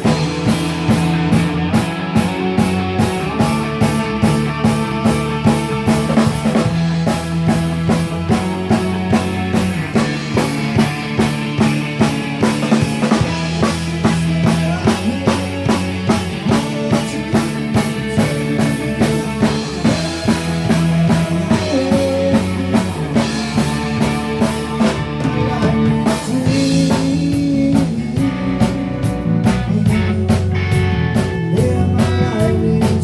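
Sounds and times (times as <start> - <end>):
drum kit beat: 0.0 - 33.0
sustained guitar chords: 0.0 - 33.0.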